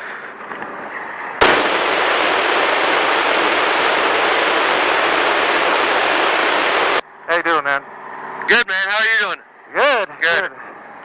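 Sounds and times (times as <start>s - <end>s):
loud steady hiss: 0.0s - 7.0s.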